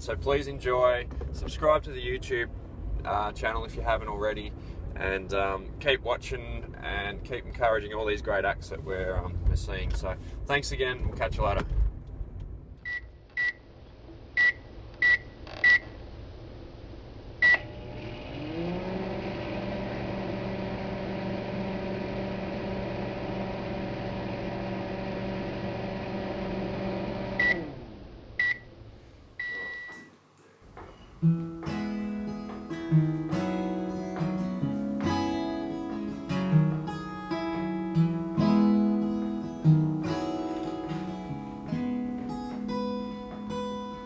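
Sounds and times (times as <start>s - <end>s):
microwave end beeps: 17.4s - 17.7s, 27.4s - 27.7s, 28.4s - 28.7s, 29.4s - 30.1s
microwave oven humming: 17.4s - 28.7s
microwave keypad beeps: 29.4s - 30.1s
acoustic guitar strumming: 30.9s - 44.0s.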